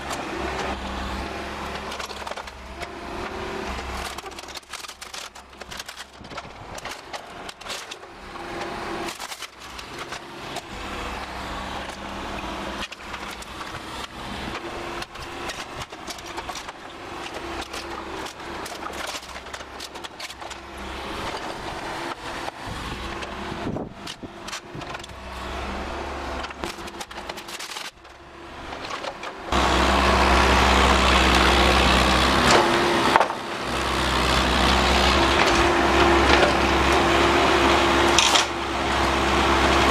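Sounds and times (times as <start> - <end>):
diesel engine under load: 0.0 - 39.9
wood boards cracking and breaking: 1.7 - 25.6, 26.3 - 29.5, 32.4 - 33.5.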